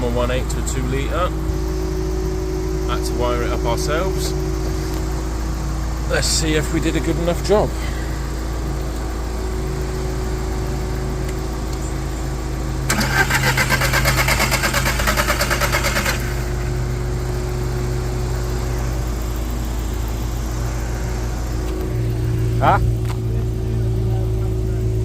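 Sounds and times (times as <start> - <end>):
steady low hum: 0.0 - 13.2, 16.0 - 25.0
car engine cranking on starter: 12.8 - 17.2.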